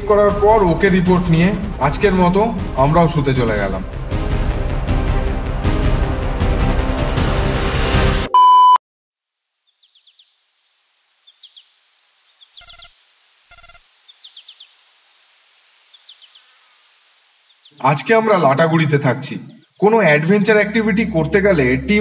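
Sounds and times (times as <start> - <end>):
background music: 0.0 - 8.3
loud electronic beep: 8.3 - 8.8, 12.6 - 12.9, 13.5 - 13.8
bird chirps: 9.5 - 14.8, 15.7 - 17.9
buzzy bird calls: 9.5 - 19.9.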